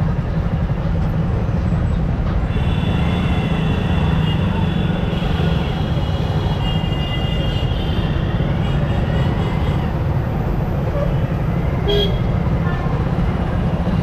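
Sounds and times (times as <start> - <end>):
road noise: 0.0 - 14.0
vehicle horn toot: 2.5 - 9.9, 11.8 - 12.3.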